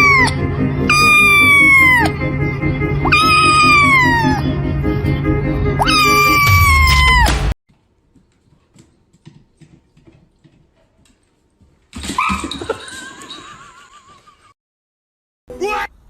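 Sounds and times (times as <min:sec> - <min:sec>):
loud wavering animal call: 0:00.0 - 0:02.2, 0:02.9 - 0:04.5, 0:05.8 - 0:07.3.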